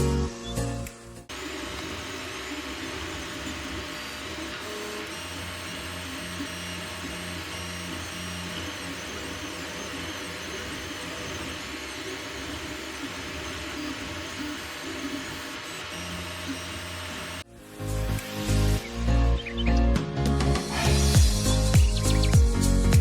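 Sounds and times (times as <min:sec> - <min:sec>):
printer fans whirring: 0:01.2 - 0:19.9
printer motor tones: 0:01.3 - 0:17.5, 0:18.2 - 0:19.9.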